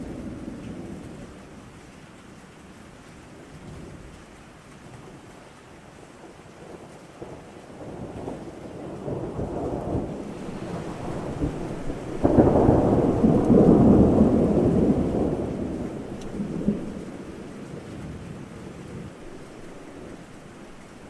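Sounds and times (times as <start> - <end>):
steady rain: 0.0 - 21.0
thunder rumbling and cracking: 7.2 - 21.0.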